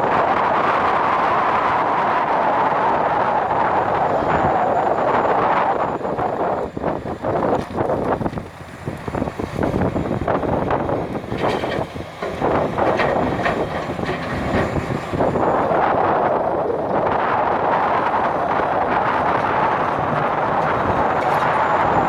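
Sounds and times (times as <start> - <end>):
excavator engine and hydraulics: 0.0 - 22.0
knocks and clatter: 11.3 - 15.6.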